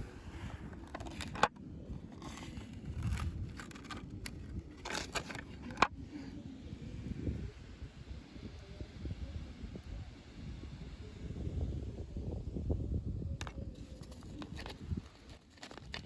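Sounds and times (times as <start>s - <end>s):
plastic and cardboard crackling: 0.6s - 6.0s, 13.8s - 16.0s.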